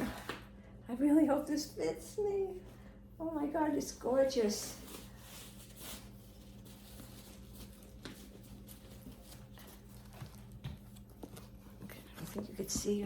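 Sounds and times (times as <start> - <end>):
low electrical hum: 0.0 - 13.0.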